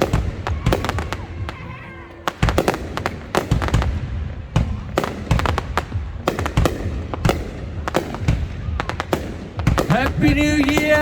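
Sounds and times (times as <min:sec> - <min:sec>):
fireworks shells bursting: 0:02.2 - 0:11.0.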